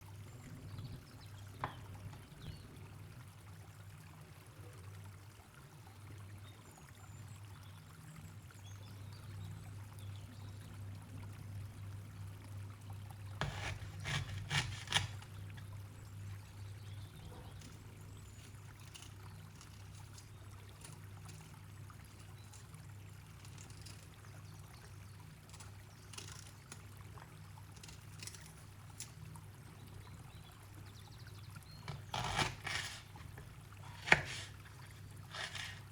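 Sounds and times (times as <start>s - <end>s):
kitchen clicks and knocks: 31.9s - 35.9s.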